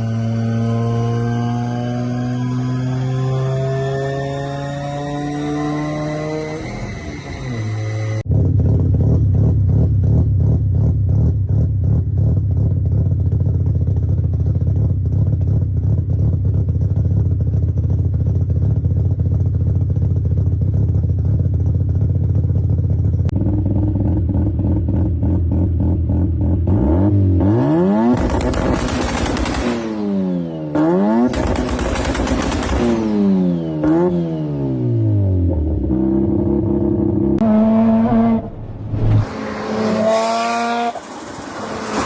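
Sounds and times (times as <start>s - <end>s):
rotary engine idling and revving: 0.0s - 42.0s.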